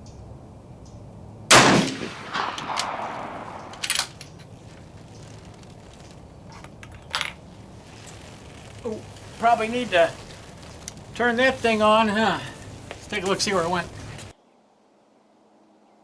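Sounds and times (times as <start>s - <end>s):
rifle shot echoing: 1.5s - 4.5s
sharp metallic clicks: 1.6s - 7.2s.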